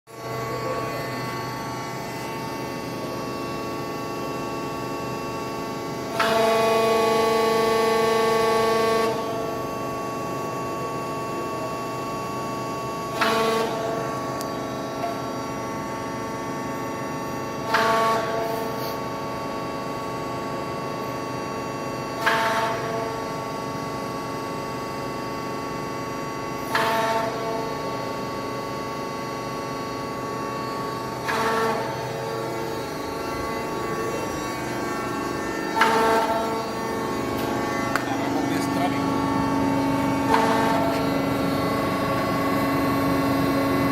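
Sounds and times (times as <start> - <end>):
drilling machine humming: 29.5 - 43.9.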